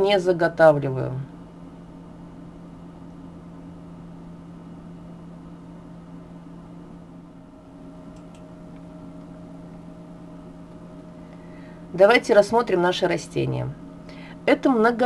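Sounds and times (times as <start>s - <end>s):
steady low hum: 0.0s - 15.0s
faint clicks: 8.1s - 9.3s.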